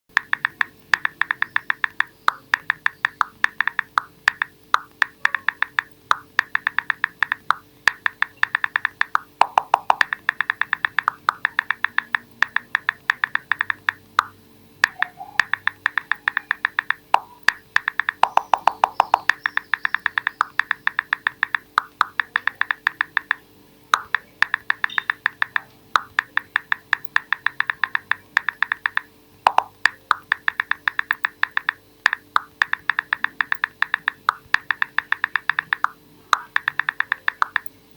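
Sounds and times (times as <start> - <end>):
phone keyboard clicks: 0.1 - 37.7.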